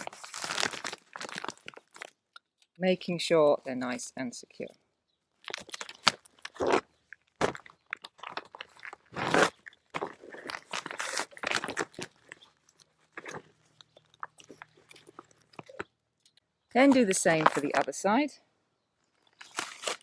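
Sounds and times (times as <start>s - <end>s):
plastic bag crinkling: 0.0s - 2.7s, 5.4s - 15.9s, 19.2s - 20.0s.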